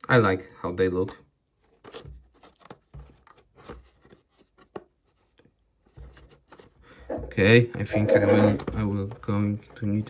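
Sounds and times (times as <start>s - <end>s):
packaging box rustling and scraping: 1.6s - 10.0s.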